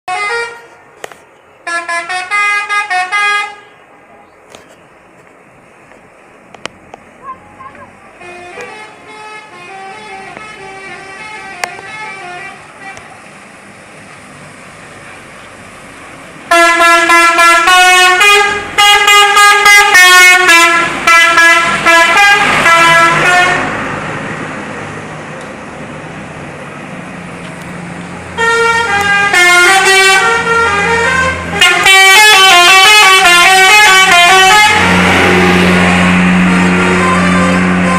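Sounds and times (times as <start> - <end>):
musical bus air horn: 0.1 - 0.8, 1.6 - 3.8, 7.2 - 13.2, 16.5 - 23.8, 28.4 - 37.9
bus engine running: 0.1 - 37.9.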